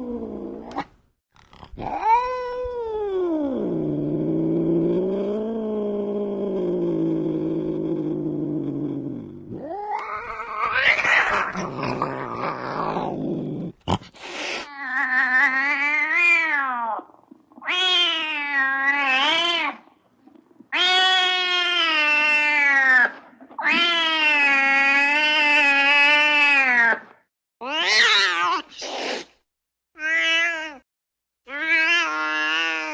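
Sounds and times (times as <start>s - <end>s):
cat growling: 1.6s - 25.7s
cat hissing: 9.9s - 13.1s, 13.9s - 14.9s, 28.3s - 29.4s
cat yowling: 27.6s - 28.7s, 31.5s - 32.9s.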